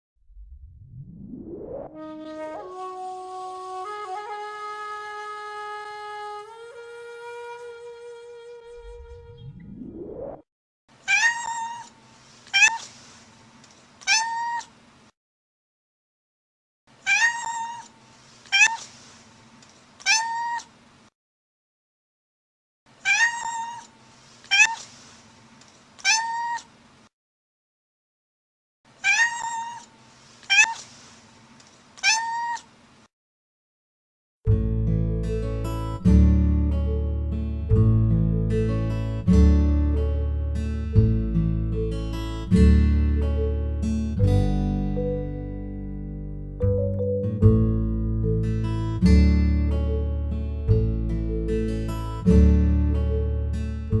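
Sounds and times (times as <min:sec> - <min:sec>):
cat meowing: 0:11.0 - 0:11.9, 0:12.5 - 0:12.9, 0:14.0 - 0:14.7, 0:17.0 - 0:17.9, 0:18.5 - 0:18.9, 0:20.0 - 0:20.7, 0:23.0 - 0:23.9, 0:24.5 - 0:24.9, 0:26.0 - 0:26.7, 0:29.0 - 0:29.9, 0:30.5 - 0:30.9, 0:32.0 - 0:32.7.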